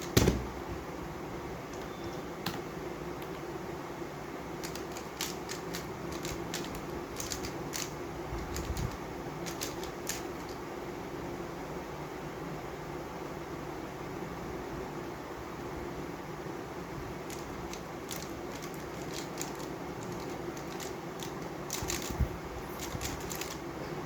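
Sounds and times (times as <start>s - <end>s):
puzzle cube layers clicking: 4.6s - 10.6s, 17.3s - 23.6s.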